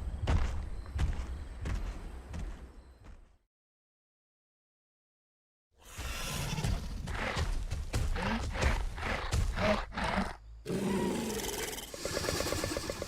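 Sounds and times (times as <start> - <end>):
pulsing creature growls: 8.1 - 13.0.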